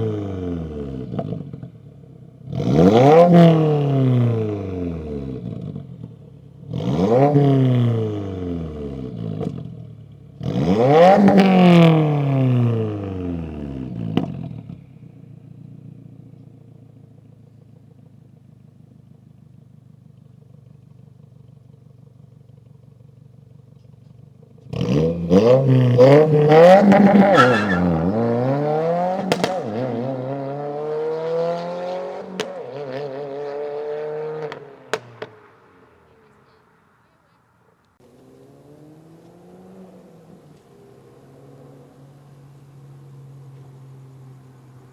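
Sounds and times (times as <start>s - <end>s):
car engine revving: 2.5s - 5.1s, 10.4s - 13.1s, 24.7s - 35.2s
car engine idling: 15.0s - 24.6s
exhaust pops: 29.2s - 29.9s.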